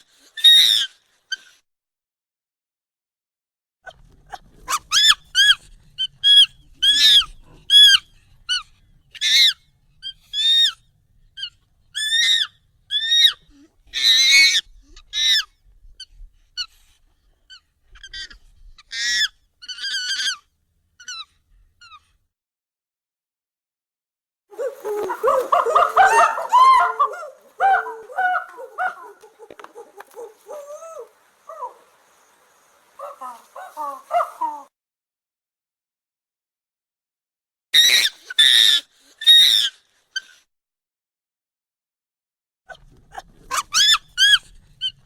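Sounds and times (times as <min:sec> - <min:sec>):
high-pitched monkey calls: 0:00.4 - 0:01.5, 0:04.7 - 0:10.8, 0:11.4 - 0:16.7, 0:17.5 - 0:22.0, 0:24.5 - 0:32.0, 0:33.0 - 0:34.7, 0:37.8 - 0:40.4, 0:43.5 - 0:45.0.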